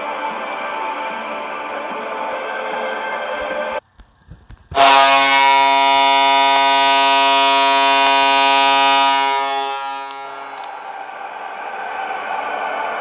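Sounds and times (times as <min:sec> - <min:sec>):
arena goal horn blast: 0:04.8 - 0:10.8.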